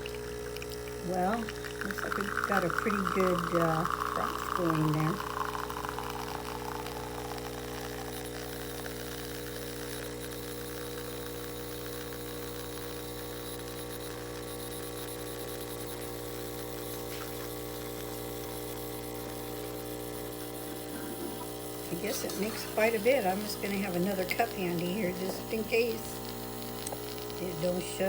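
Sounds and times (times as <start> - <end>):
espresso machine pump humming: 0.0 - 28.0.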